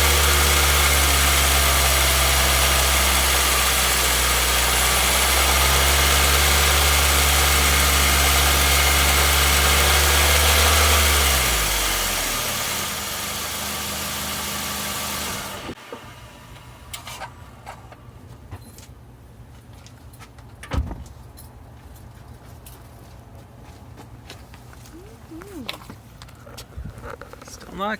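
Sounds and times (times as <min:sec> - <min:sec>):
car engine running: 0:00.0 - 0:17.3.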